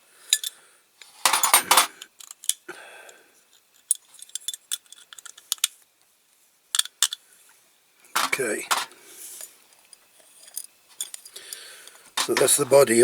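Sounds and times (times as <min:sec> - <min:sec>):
metal parts clinking and rattling: 0:00.3 - 0:02.7, 0:03.5 - 0:05.7, 0:08.2 - 0:08.9, 0:10.2 - 0:11.4, 0:12.2 - 0:12.8.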